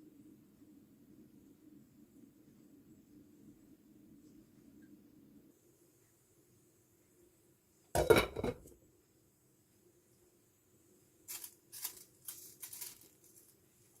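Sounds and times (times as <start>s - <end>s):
kitchen utensil clatter: 8.0s - 8.7s.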